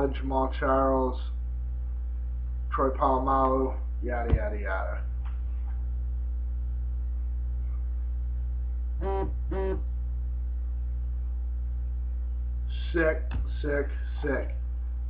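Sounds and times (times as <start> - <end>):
electrical mains hum: 0.0 - 15.0.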